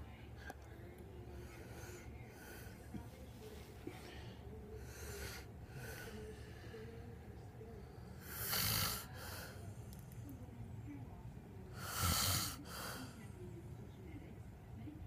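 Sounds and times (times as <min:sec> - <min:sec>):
man snoring: 0:08.2 - 0:09.1, 0:11.8 - 0:12.6.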